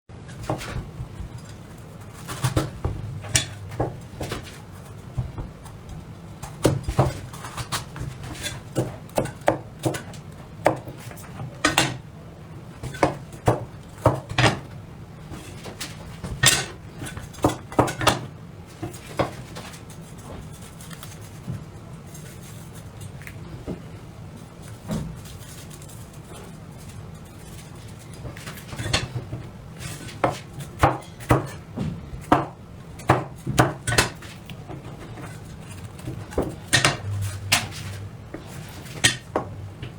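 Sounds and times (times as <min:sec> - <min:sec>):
knife chopping on cutting board: 0:30.0 - 0:34.2.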